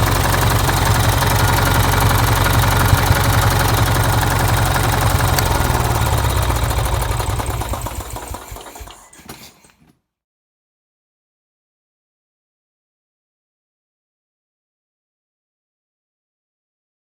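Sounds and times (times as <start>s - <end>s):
engine welder running: 0.0s - 9.8s.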